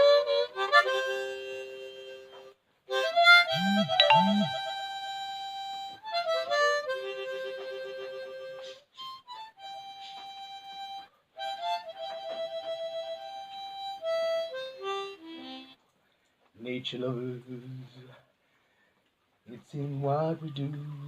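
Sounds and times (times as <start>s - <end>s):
harmonica solo: 0.0s - 15.8s.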